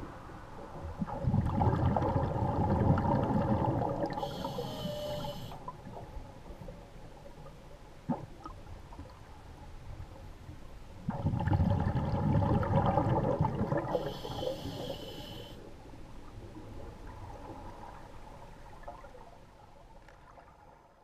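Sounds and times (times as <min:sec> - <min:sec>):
exhaled bubbles rushing underwater: 0:00.6 - 0:06.6, 0:11.0 - 0:14.9
regulator inhalation hiss: 0:04.2 - 0:05.6, 0:14.0 - 0:15.6.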